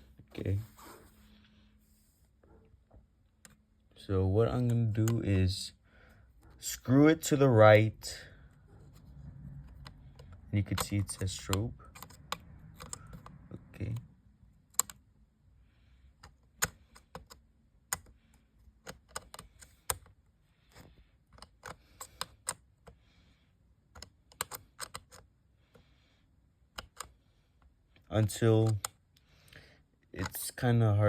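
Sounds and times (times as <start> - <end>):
clicks and faint scraping on screw: 16.2 - 23.0, 23.8 - 25.8, 26.7 - 30.7.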